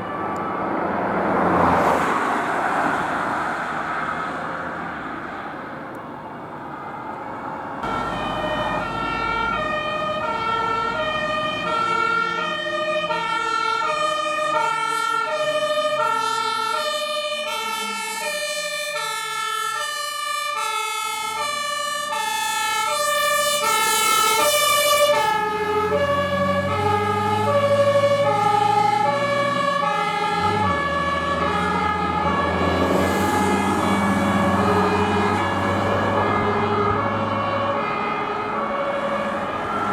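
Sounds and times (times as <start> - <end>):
two-tone fire engine siren: 0.0 - 39.9
low diesel engine rumble: 7.7 - 12.0.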